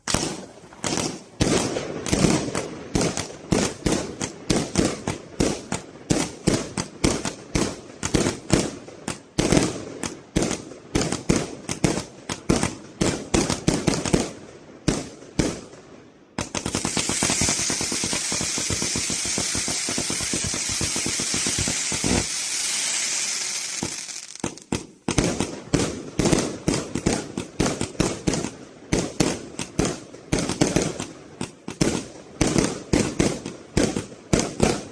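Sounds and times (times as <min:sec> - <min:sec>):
firework cake shots: 0:16.4 - 0:34.9
firework hissing and crackle: 0:16.4 - 0:34.9.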